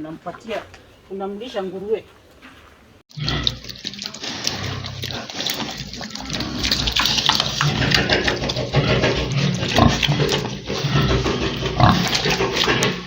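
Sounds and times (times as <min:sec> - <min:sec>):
pigs grunting and squealing: 0:03.1 - 0:13.0.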